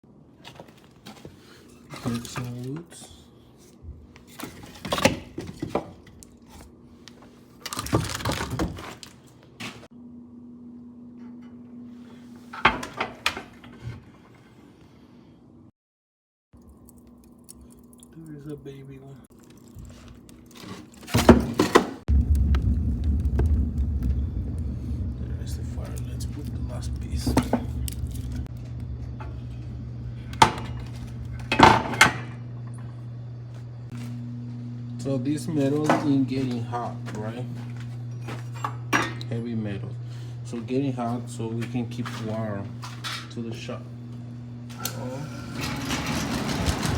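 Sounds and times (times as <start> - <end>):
steady low hum: 22.1 - 46.0.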